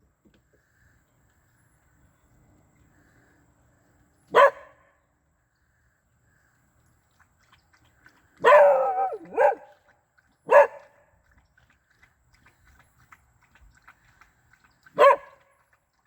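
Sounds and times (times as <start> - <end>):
dog barking: 4.3 - 4.8, 8.4 - 9.7, 10.5 - 10.8, 15.0 - 15.4.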